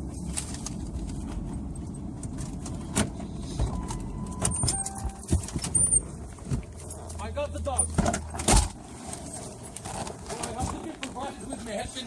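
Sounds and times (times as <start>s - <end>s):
electronic warning tone: 3.7s - 5.9s.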